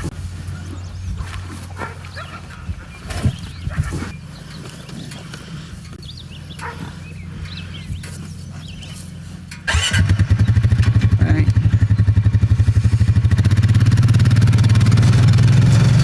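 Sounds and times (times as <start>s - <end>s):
cows breathing: 0.0s - 9.9s, 11.7s - 13.5s
steady low hum: 0.0s - 13.3s
small birds chirping: 0.0s - 13.4s.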